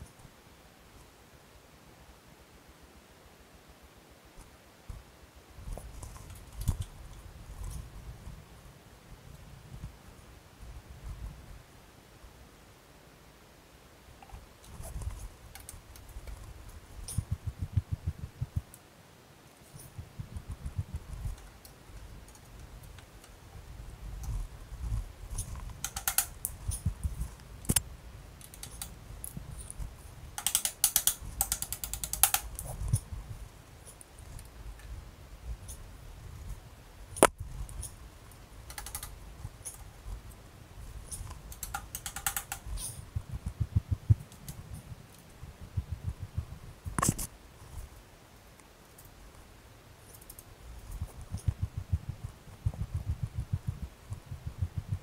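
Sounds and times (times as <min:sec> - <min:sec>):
hand tools clicking and rattling: 0:25.4 - 0:26.9, 0:30.4 - 0:33.0, 0:38.7 - 0:39.9, 0:41.1 - 0:43.0
ratchet wrench rattling: 0:41.5 - 0:42.9.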